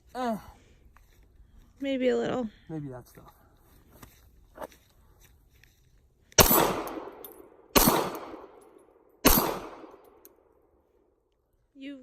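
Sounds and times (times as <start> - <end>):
pistol shots with echo: 6.4 - 10.2.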